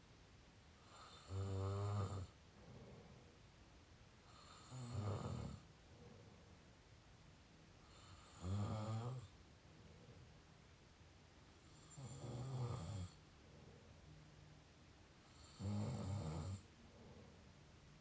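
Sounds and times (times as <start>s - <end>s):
low-pitched mouth snoring: 0.8s - 2.4s, 4.3s - 5.6s, 7.9s - 9.3s, 11.7s - 13.2s, 15.3s - 16.7s.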